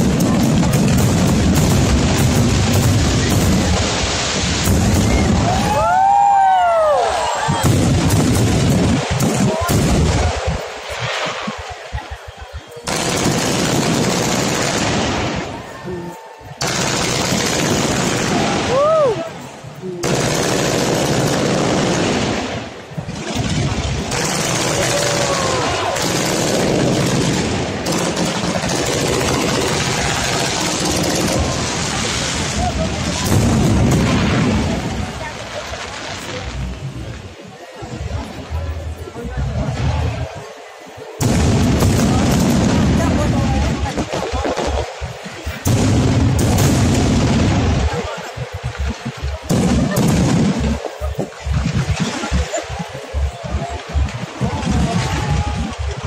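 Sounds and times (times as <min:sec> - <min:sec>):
fireworks booming and crackling: 0:00.0 - 0:56.0.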